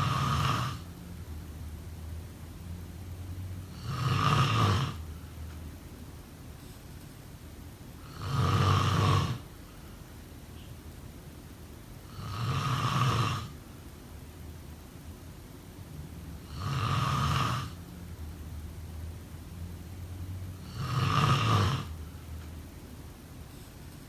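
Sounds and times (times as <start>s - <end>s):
person snoring: 0.0s - 0.9s, 3.7s - 5.0s, 8.1s - 9.4s, 12.1s - 13.6s, 16.4s - 17.8s, 20.6s - 22.0s.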